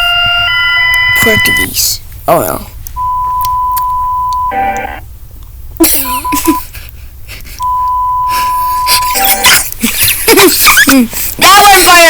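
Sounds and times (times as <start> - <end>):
steady high beep: 0.0 - 1.8, 3.0 - 5.0, 6.2 - 6.6, 7.6 - 9.6.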